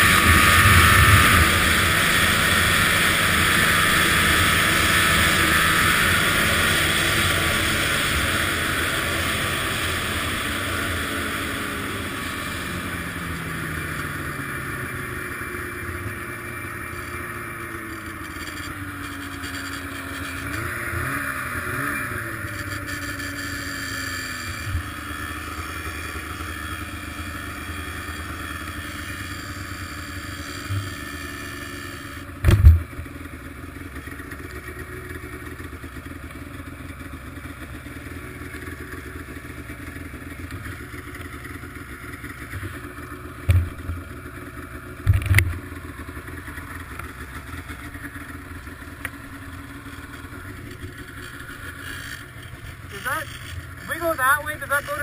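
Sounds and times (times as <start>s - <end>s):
snowmobile engine running: 0.0s - 55.0s
loud thump: 32.4s - 32.9s.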